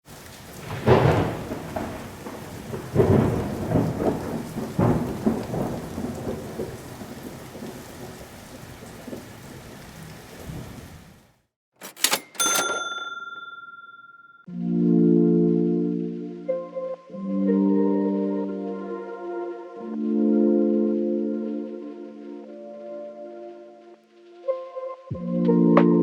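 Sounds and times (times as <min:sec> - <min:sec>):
steady rain: 0:00.0 - 0:11.4, 0:19.2 - 0:24.5
thunder rumbling: 0:00.1 - 0:11.2
ringing chime-like tone: 0:11.9 - 0:14.5.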